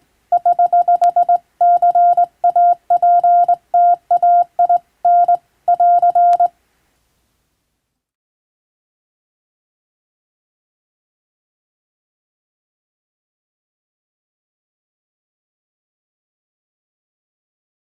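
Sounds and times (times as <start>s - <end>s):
morse code tone on telegraph key: 0.3s - 6.5s.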